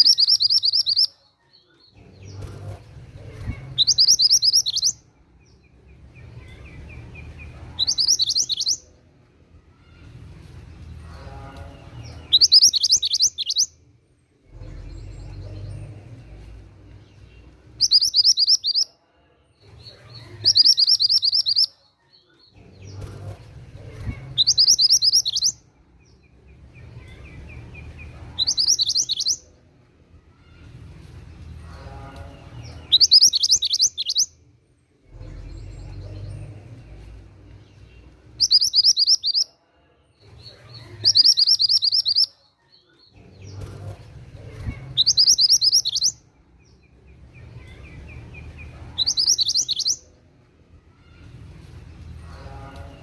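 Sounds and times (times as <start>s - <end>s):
low rumble: 14.2s - 17.8s, 34.7s - 38.4s.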